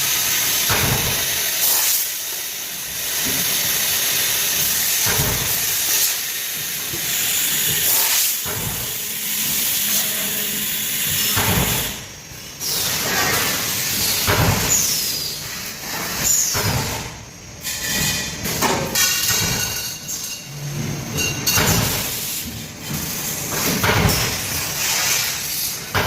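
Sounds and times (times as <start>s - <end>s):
metallic clanks and knocks: 17.9s - 22.2s.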